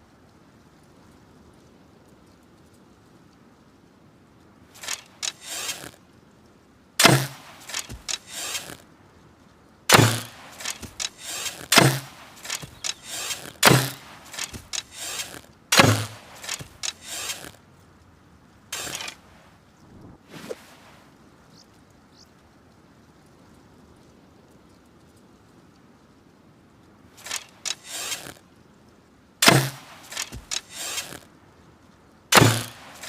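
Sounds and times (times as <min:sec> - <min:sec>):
bow and arrows rattling: 0:04.8 - 0:06.0, 0:07.0 - 0:08.8, 0:09.9 - 0:17.6, 0:18.7 - 0:21.2, 0:27.2 - 0:28.4, 0:29.4 - 0:31.3, 0:32.3 - 0:33.0
bowstring snapping: 0:09.9 - 0:17.6.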